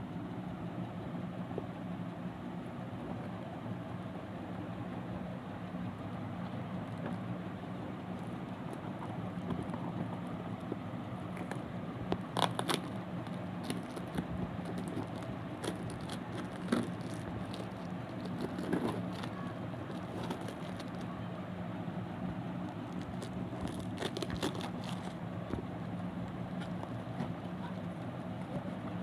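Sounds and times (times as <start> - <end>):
packaging crackling: 12.2 - 21.1, 22.7 - 25.2.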